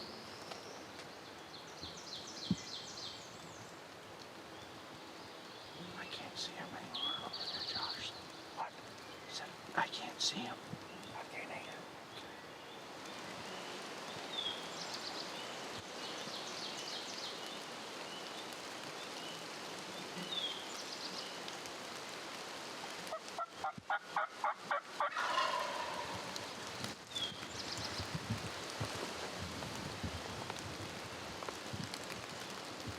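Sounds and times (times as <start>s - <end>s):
turkey gobbling: 23.4s - 26.5s.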